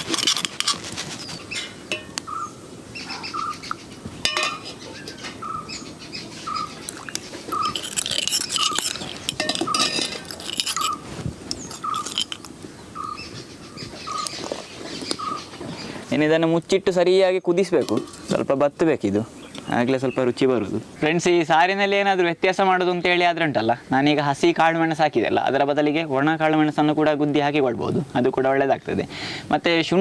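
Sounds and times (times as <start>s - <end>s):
spoon clinking and scraping pot: 0.0s - 2.2s, 4.3s - 4.8s, 6.9s - 12.5s, 17.8s - 18.3s
bird calling: 0.0s - 16.2s.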